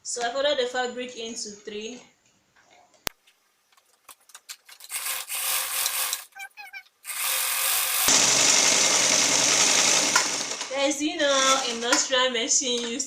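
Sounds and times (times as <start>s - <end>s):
sewing machine stitching: 4.8s - 6.3s, 7.1s - 12.0s.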